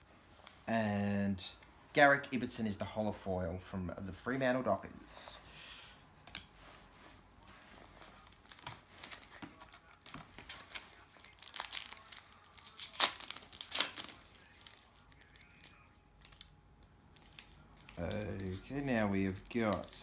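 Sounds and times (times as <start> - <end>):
foil wrapper tearing and crinkling: 8.2 - 16.5, 17.1 - 20.0.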